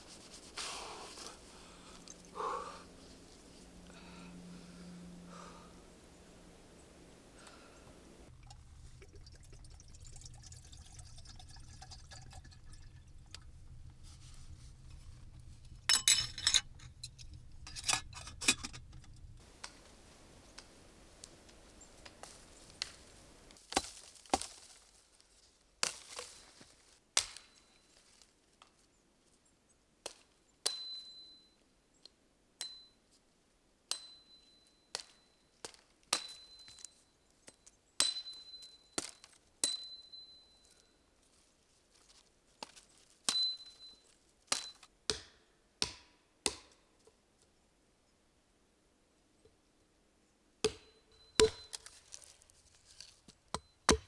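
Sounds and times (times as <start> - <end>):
metal kitchenware clinking: 15.9 - 18.8.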